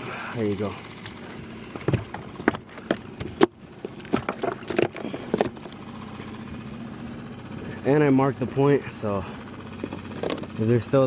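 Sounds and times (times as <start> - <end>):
steady low hum: 0.0 - 11.0
fish knocking and clattering in boat: 1.0 - 5.8.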